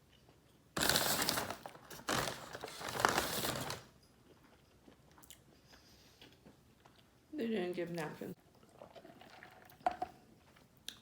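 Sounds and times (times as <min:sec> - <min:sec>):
fast-food paper packaging crinkling: 0:00.8 - 0:03.9.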